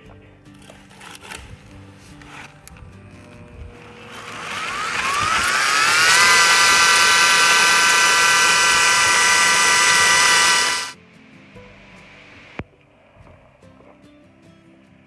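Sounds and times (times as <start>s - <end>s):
power tool motor whine: 3.6s - 11.0s.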